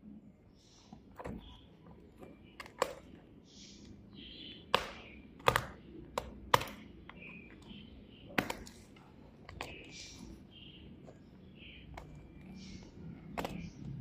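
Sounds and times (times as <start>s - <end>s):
sharp taps and clicks: 4.7s - 8.8s.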